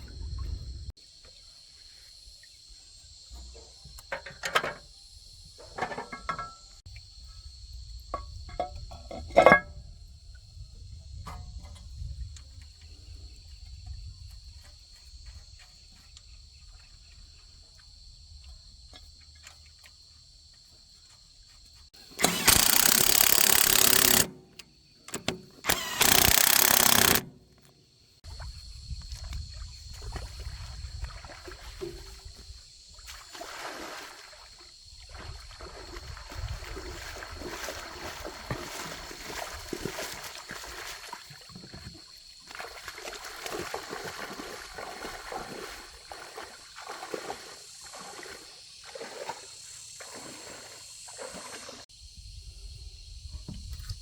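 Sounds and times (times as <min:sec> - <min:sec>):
knocks and clicks on metal: 0:22.2 - 0:27.4.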